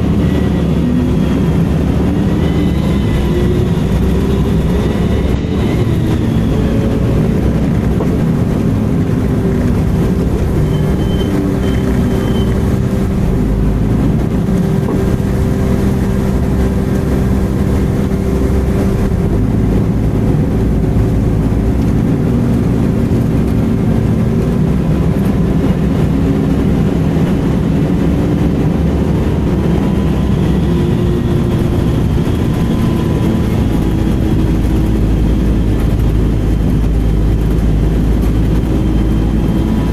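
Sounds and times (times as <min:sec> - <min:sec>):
bus diesel engine running: 0:00.0 - 0:39.9.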